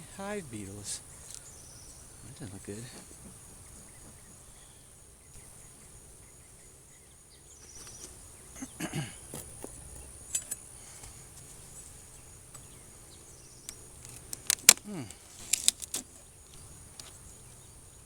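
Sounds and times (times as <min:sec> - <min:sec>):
crickets droning: 0:00.0 - 0:18.0
handling noise: 0:07.7 - 0:12.8
sharp clicks: 0:13.6 - 0:16.0.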